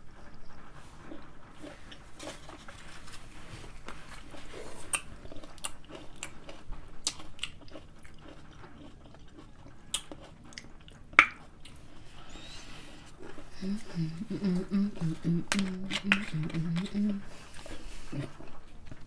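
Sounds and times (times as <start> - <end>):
chewing crunchy pickle: 0.0 - 19.0
mouth clicks: 10.0 - 19.0.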